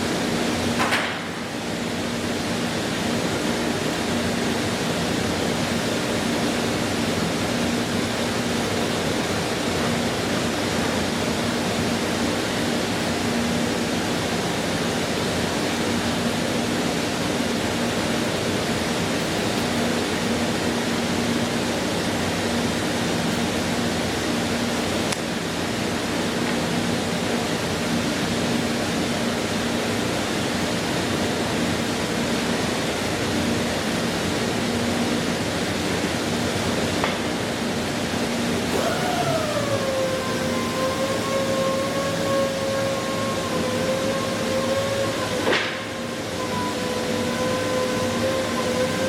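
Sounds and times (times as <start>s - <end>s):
woodworking machine running: 0.0s - 49.0s.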